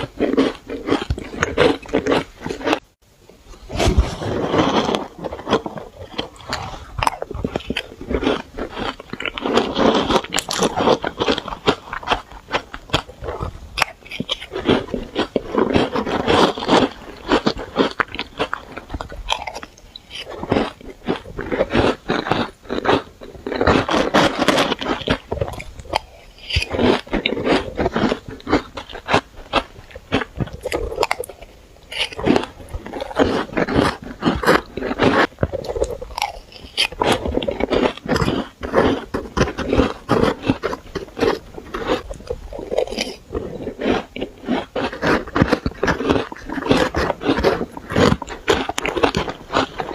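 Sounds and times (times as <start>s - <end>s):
crunching shaved ice: 0.0s - 2.9s, 4.0s - 49.9s.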